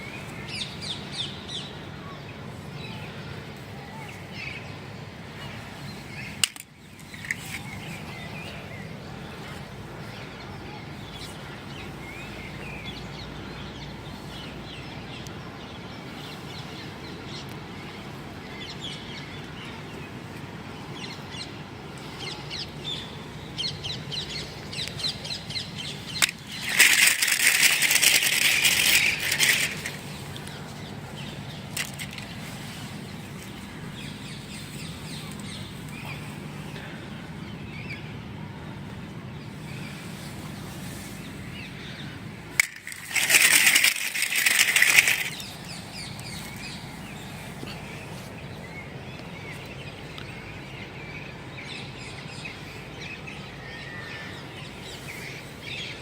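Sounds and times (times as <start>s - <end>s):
loud crinkling rustle: 5.4s - 8.7s, 24.4s - 37.0s, 39.6s - 48.8s
packaging crackles and clicks: 26.1s - 30.6s, 42.6s - 46.7s.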